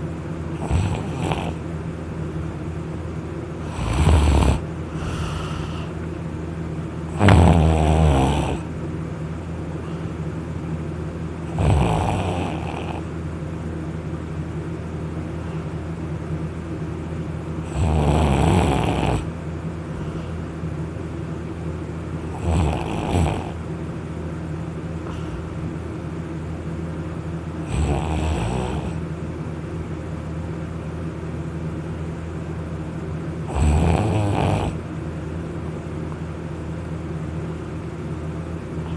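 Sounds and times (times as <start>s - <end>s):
person snoring loudly: 0.6s - 1.6s, 3.6s - 5.9s, 7.1s - 8.7s, 11.5s - 13.1s, 17.6s - 19.3s, 22.2s - 23.6s, 27.6s - 29.0s, 33.4s - 34.8s.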